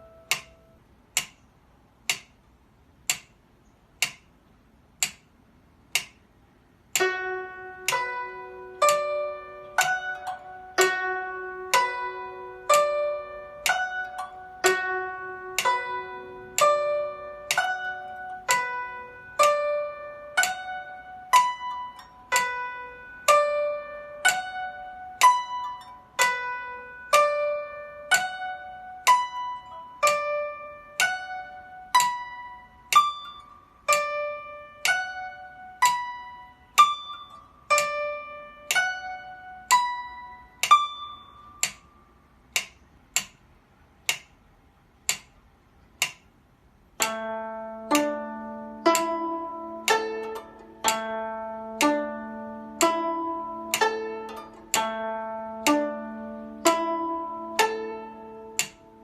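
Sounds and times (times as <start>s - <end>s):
plucked zither broken chords: 6.9s - 41.9s, 47.0s - 59.0s.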